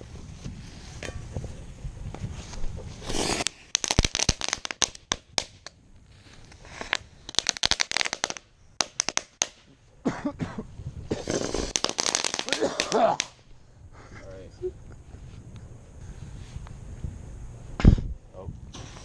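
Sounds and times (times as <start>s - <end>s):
fireworks crackling pops: 2.1s - 9.9s, 11.0s - 13.5s
fireworks hiss: 2.2s - 9.8s, 10.6s - 14.2s, 18.7s - 19.0s.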